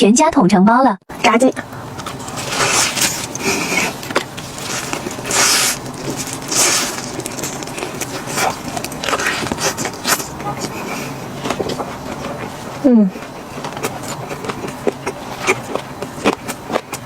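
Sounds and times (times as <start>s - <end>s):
fried chicken crackling: 1.1s - 17.0s
paper packaging rustling: 1.9s - 12.6s.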